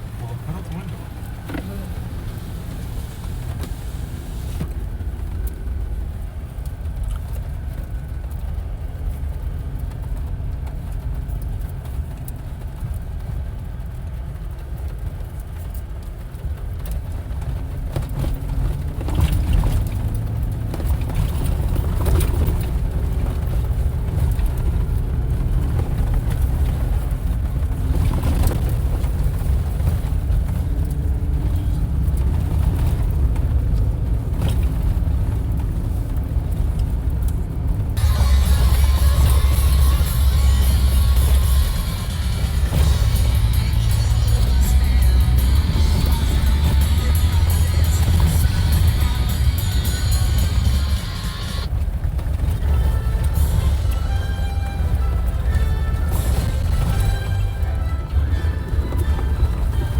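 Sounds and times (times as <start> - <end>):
vehicle engine and tyres rumbling: 0.0 - 59.9
knocks and rattles: 38.0 - 59.9.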